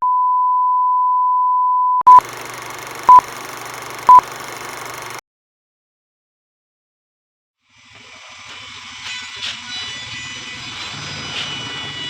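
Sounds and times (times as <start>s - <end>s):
short beeps: 0.0s - 2.3s, 3.0s - 5.2s
electronic test tone: 1.8s - 5.2s.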